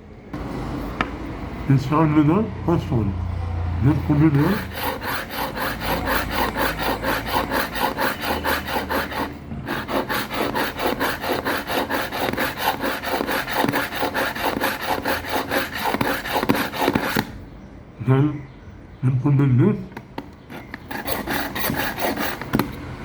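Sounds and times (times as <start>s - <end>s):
knife scraping through sharpener: 4.1s - 17.3s, 20.5s - 22.8s.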